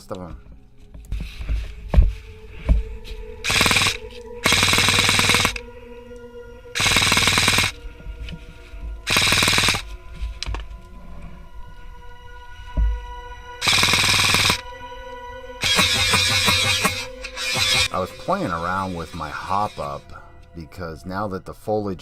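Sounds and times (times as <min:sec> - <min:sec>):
background music: 0:00.0 - 0:22.0
airsoft gun full-auto bursts: 0:03.5 - 0:05.6, 0:06.8 - 0:07.7, 0:09.1 - 0:09.8, 0:13.6 - 0:14.6, 0:15.6 - 0:17.9.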